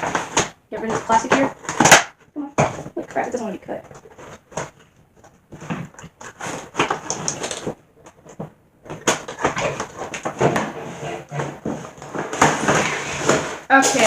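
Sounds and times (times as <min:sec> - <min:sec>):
packaging crinkling and rustling: 0:00.0 - 0:14.0
knife cutting packaging: 0:05.5 - 0:08.3, 0:08.9 - 0:13.6.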